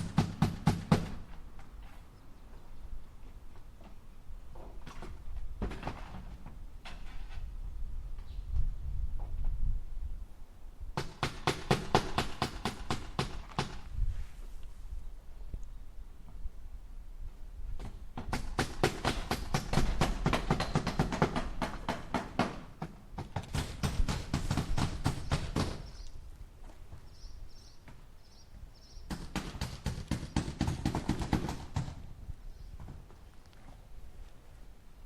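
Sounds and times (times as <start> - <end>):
hammer driving nails into wood: 0.0 - 1.2, 11.0 - 13.9, 17.8 - 25.9, 29.1 - 32.0.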